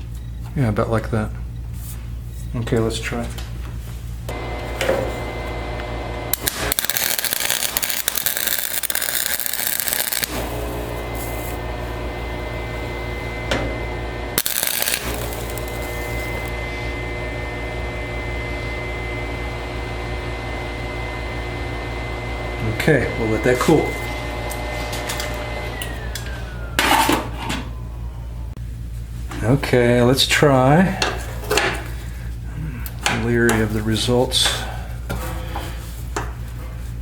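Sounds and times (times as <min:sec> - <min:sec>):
steady hum: 0:03.6 - 0:18.4
welder arcing: 0:06.3 - 0:11.7, 0:14.4 - 0:16.5.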